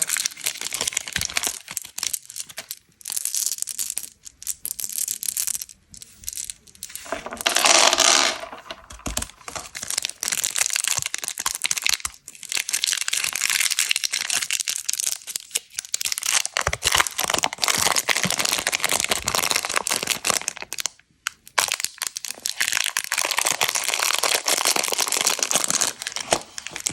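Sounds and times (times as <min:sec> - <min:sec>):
plastic packaging crinkling: 0:00.0 - 0:20.9, 0:21.6 - 0:26.9.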